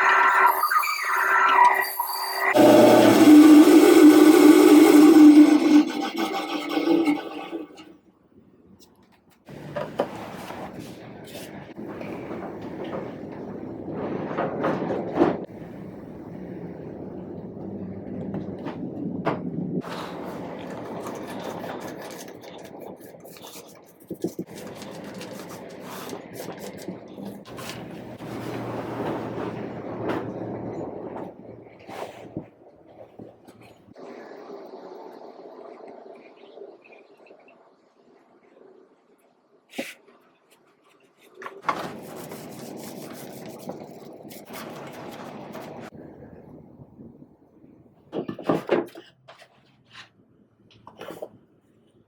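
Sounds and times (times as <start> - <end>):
scraping and rubbing: 2.4 - 7.9, 19.8 - 33.8, 40.9 - 45.9
woodworking tool rasping: 2.6 - 7.9.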